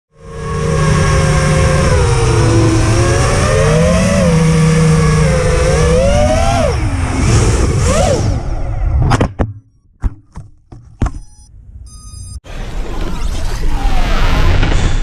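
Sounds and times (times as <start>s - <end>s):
drone motors whining: 0.1s - 9.0s.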